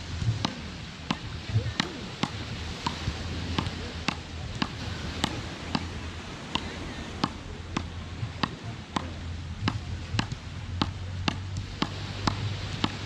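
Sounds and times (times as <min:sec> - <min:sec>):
steady background hiss: 0:00.0 - 0:13.0
wooden paddles hitting ball: 0:00.2 - 0:13.0.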